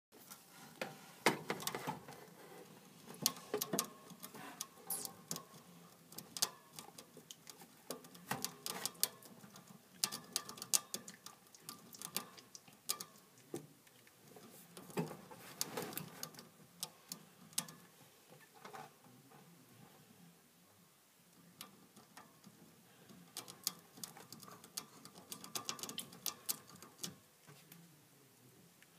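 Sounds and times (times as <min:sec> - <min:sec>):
hamster gnawing food: 0:03.1 - 0:17.9, 0:21.5 - 0:27.7.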